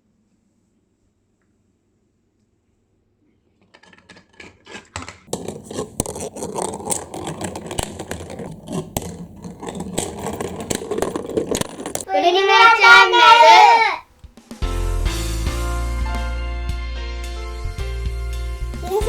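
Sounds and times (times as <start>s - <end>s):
marbles rattling down plastic track: 3.7s - 13.8s
marbles clicking on track: 3.8s - 12.1s.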